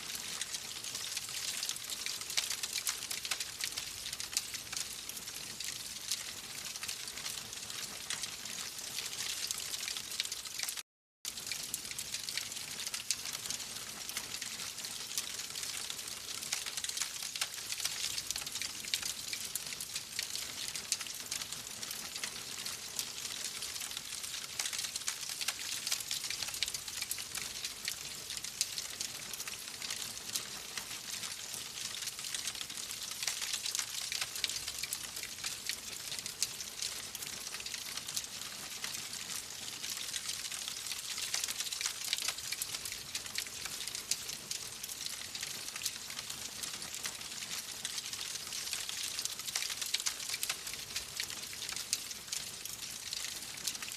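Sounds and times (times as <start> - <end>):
wood fire crackling: 47.9 - 53.8.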